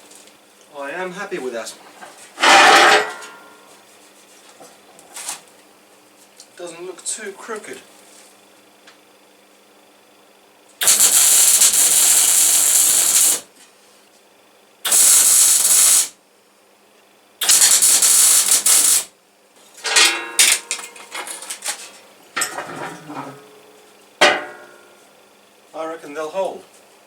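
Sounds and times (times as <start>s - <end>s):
metal knocking and clattering: 2.4s - 3.6s, 19.8s - 23.5s, 24.2s - 24.9s
crackling weld bursts: 10.8s - 13.5s, 14.8s - 16.2s, 17.4s - 19.1s.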